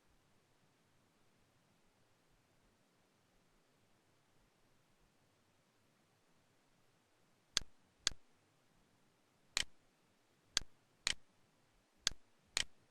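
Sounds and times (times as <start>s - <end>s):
mouse clicks: 7.6s - 8.2s, 9.6s - 9.8s, 10.6s - 11.2s, 12.0s - 12.8s.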